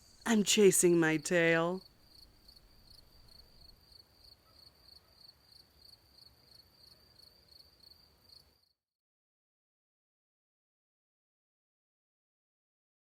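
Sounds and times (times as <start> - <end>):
cricket chirps: 1.9 - 8.8.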